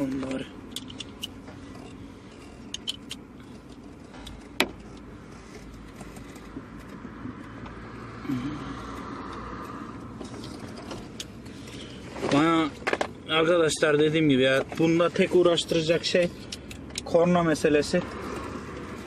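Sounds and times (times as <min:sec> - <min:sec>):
screwdriver clicking and scraping: 0:00.7 - 0:05.1.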